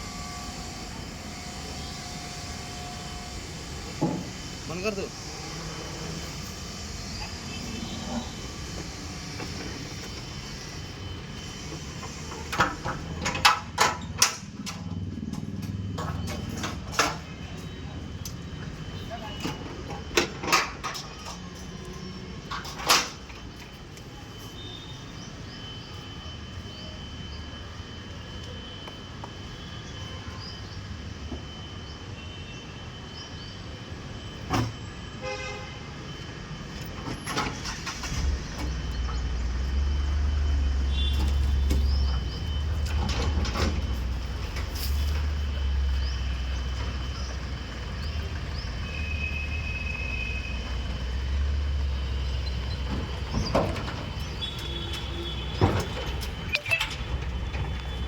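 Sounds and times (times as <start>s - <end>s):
vehicle engine rumbling: 0.0s - 23.5s, 36.6s - 58.0s
short high tone: 56.5s - 57.1s.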